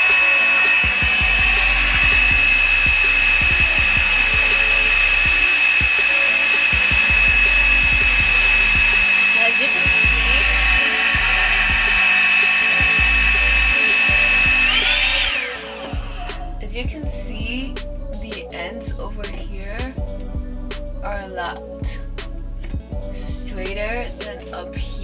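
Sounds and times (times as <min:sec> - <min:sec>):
dryer switching off: 0:00.0 - 0:16.5
blow dryer whining: 0:00.0 - 0:20.8.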